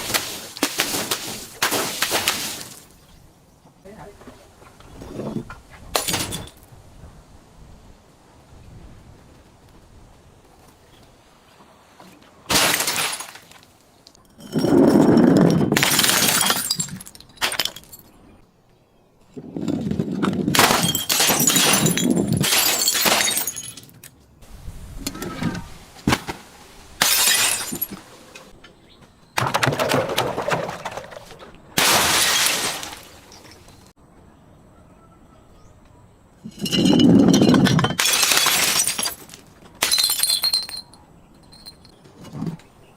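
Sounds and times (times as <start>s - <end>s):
glass breaking: 6.0s - 6.6s, 12.5s - 13.5s, 14.4s - 18.1s, 20.5s - 24.0s, 27.0s - 28.0s, 31.8s - 33.7s, 36.5s - 41.0s
glass bottle smashing: 12.5s - 13.4s, 14.4s - 18.1s, 20.5s - 23.9s, 27.0s - 28.0s, 31.8s - 33.7s, 36.5s - 41.9s
crunching glass: 12.5s - 13.6s, 14.2s - 18.2s, 20.5s - 24.1s, 27.0s - 28.0s, 31.8s - 33.9s, 36.5s - 42.0s.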